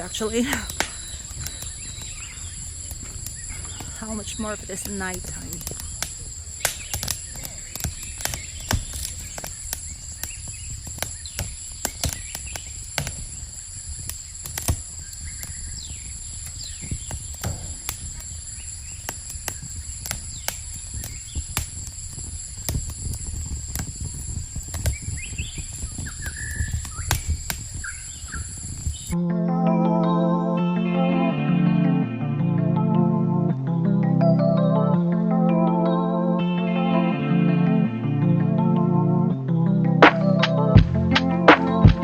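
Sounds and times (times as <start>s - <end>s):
wind rumble on microphone: 0.0s - 29.2s.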